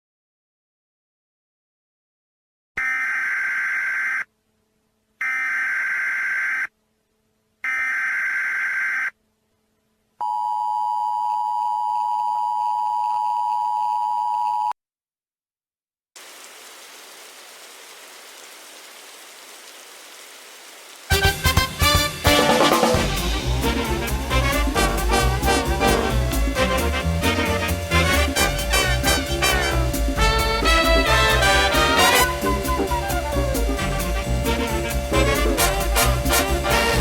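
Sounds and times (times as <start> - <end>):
static hiss: 16.2 - 37.0
digital header warble: 22.9 - 37.0.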